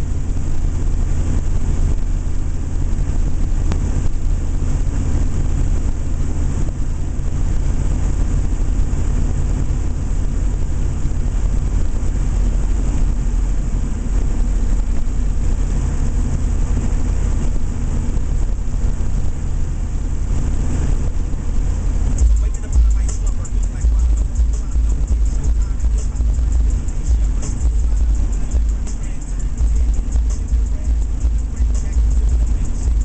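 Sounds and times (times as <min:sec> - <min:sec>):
diesel engine drone while driving: 0:00.0 - 0:33.0
road noise: 0:00.0 - 0:33.0.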